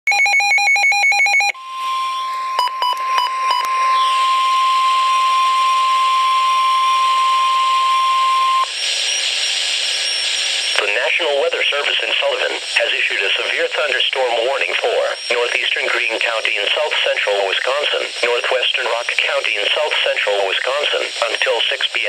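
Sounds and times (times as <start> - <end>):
short beeps: 0.1 - 4.6
steady warning alarm tone: 0.1 - 12.0
radio hiss: 8.5 - 22.0
warbling digital data burst: 8.6 - 11.1.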